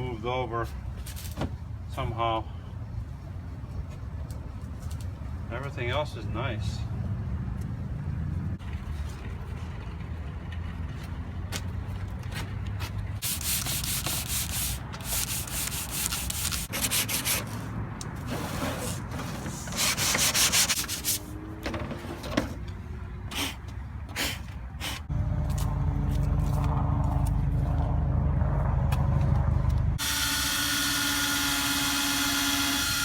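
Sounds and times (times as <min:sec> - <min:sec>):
scraping strokes on metal panel: 0:18.3 - 0:21.3
low steady rumble: 0:25.0 - 0:30.0
low hum: 0:25.1 - 0:30.0.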